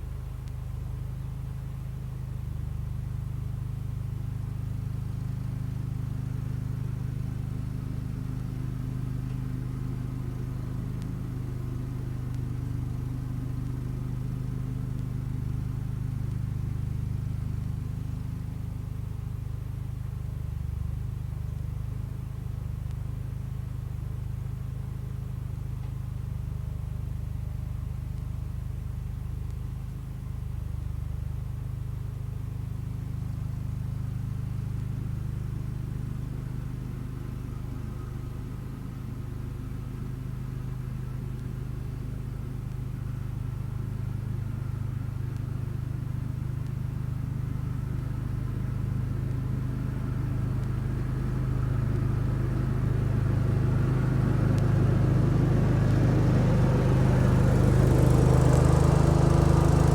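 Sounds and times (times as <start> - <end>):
garden tractor engine running: 42.8 - 59.9.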